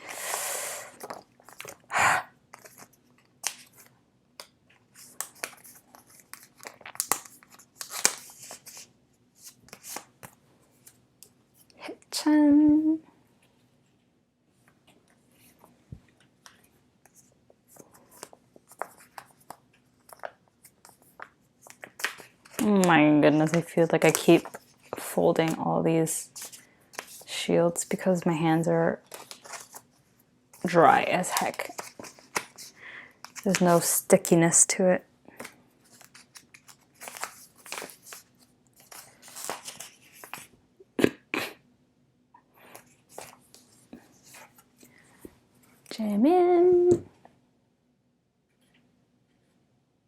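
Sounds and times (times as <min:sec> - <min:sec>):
plastic sleeves crinkling: 0:02.5 - 0:10.2, 0:30.6 - 0:34.2, 0:35.3 - 0:40.6.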